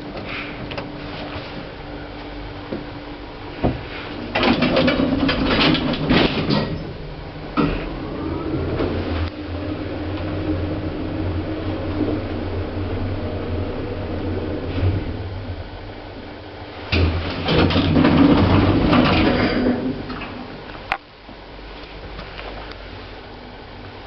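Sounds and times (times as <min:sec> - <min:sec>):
lift running hum: 0:00.0 - 0:24.0
lift doors clattering shut: 0:03.6 - 0:10.9, 0:16.9 - 0:20.6.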